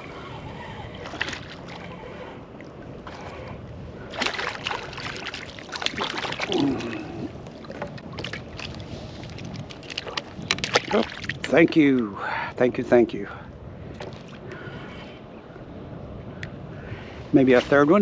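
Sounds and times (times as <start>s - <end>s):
fish splashing in water: 1.0s - 1.9s, 4.0s - 11.4s.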